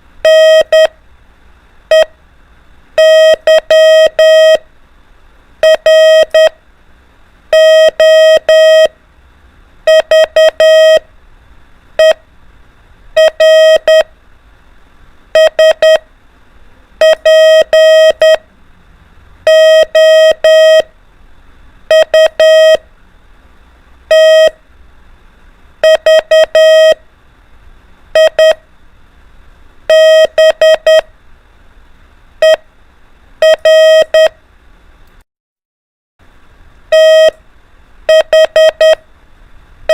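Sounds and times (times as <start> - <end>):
morse code beeps: 0.2 - 0.9, 1.9 - 2.1, 3.0 - 4.6, 5.6 - 6.6, 7.5 - 8.9, 9.9 - 11.0, 12.0 - 12.2, 13.2 - 14.1, 15.4 - 16.0, 17.0 - 18.4, 19.5 - 20.9, 21.9 - 22.8, 24.1 - 24.6, 25.8 - 27.0, 28.2 - 28.6, 29.9 - 31.1, 32.4 - 32.6, 33.4 - 34.4, 36.9 - 37.4, 38.1 - 39.0.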